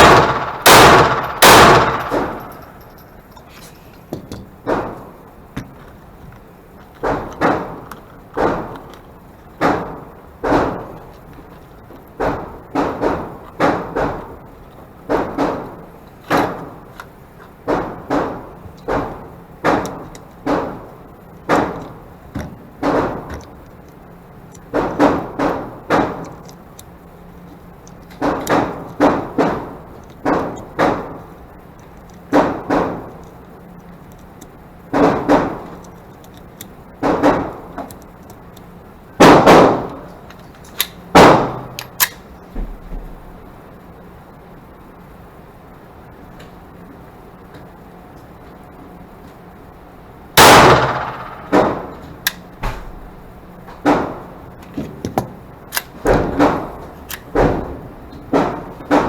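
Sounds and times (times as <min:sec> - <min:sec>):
pistol shots: 0:00.0 - 0:02.8, 0:50.4 - 0:53.1.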